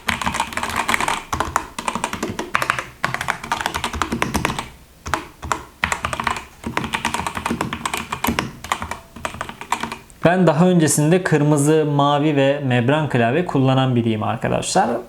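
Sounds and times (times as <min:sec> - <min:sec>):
fast typing on mechanical keyboard: 0:00.0 - 0:10.0.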